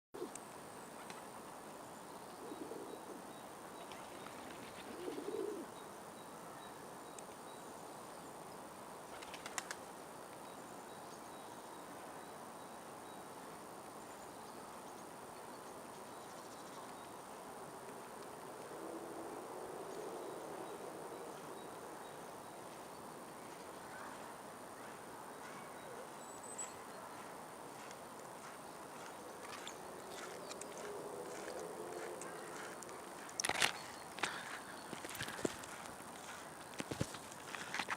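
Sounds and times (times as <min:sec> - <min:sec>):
outdoor background hiss: 0:00.2 - 0:37.9
faint bird calls: 0:20.2 - 0:36.6.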